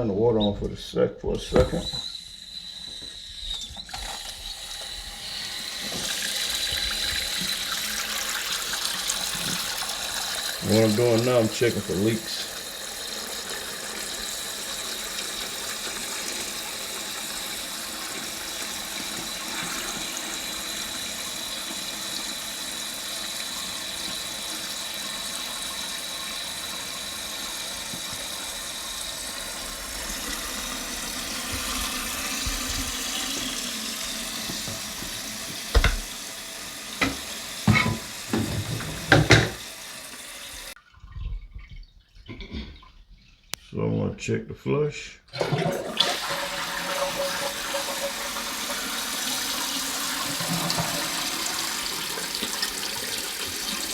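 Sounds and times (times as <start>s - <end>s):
toilet tank refilling hiss: 1.3s - 40.8s, 45.3s - 53.9s
sharp knocks: 35.6s - 36.1s.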